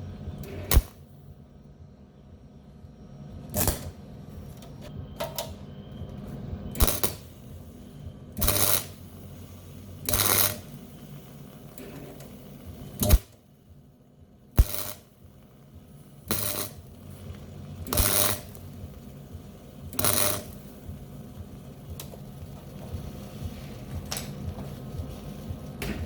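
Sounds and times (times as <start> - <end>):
steady low hum: 0.0 - 26.0
welding arc bursts: 0.6 - 1.1, 6.7 - 7.8, 8.4 - 13.4, 14.5 - 23.1.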